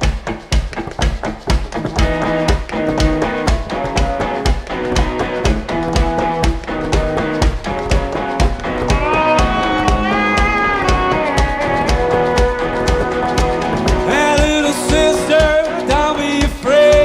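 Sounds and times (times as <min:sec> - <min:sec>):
drum kit playing a beat: 0:00.0 - 0:17.0
sustained instrument notes: 0:08.6 - 0:15.7.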